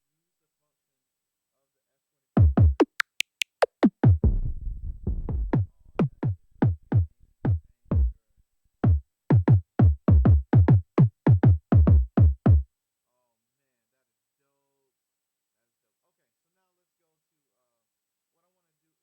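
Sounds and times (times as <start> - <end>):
deep drum machine kick hits: 3.9 - 8.1.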